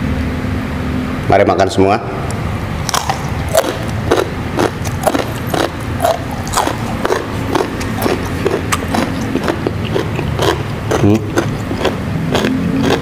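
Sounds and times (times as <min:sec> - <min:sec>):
crunchy chewing of raw beans: 0:02.8 - 0:13.0.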